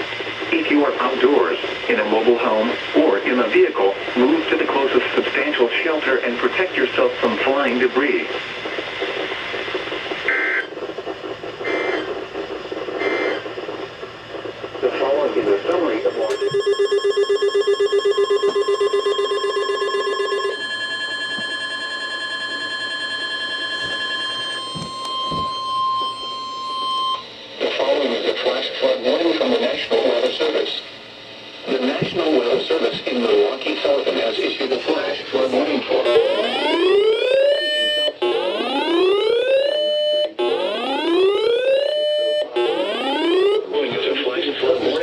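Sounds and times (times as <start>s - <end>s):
pulsing alarm tone: 10.2s - 10.7s, 11.6s - 12.2s, 13.0s - 13.4s, 16.0s - 27.4s, 36.0s - 43.8s
steady alert tone: 16.1s - 22.0s.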